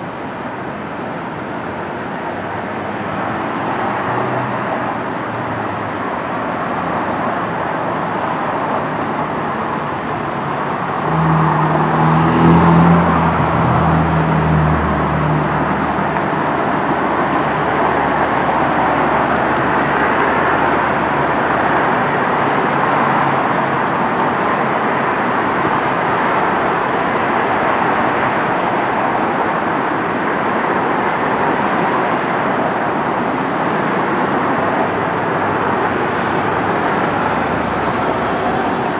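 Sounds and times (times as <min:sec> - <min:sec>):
road traffic: 0:00.0 - 0:38.9
heavy engine droning: 0:08.8 - 0:29.7, 0:32.5 - 0:38.9.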